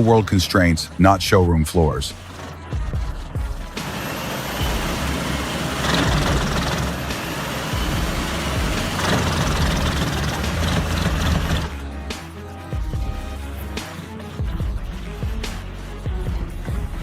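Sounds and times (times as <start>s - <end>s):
industrial shredder mechanical din: 0.0s - 12.3s
low engine hum: 2.1s - 11.8s.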